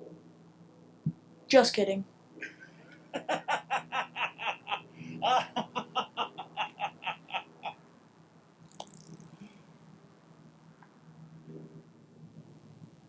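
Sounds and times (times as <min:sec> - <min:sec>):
person laughing: 0:02.4 - 0:07.8.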